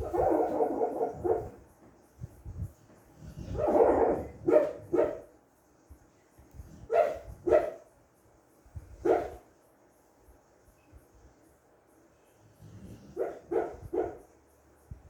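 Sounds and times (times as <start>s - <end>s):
dog barking in sleep: 0.0s - 1.6s, 3.3s - 5.3s, 6.8s - 7.9s, 9.0s - 9.5s, 12.6s - 14.3s.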